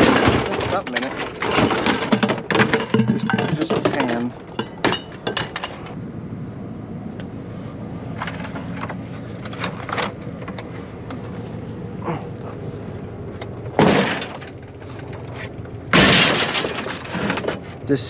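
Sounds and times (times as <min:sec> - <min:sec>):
metal crash: 0:00.0 - 0:06.0, 0:13.7 - 0:17.8
scrap metal clinking: 0:00.0 - 0:06.0, 0:13.8 - 0:17.8
low motor hum: 0:00.0 - 0:18.0.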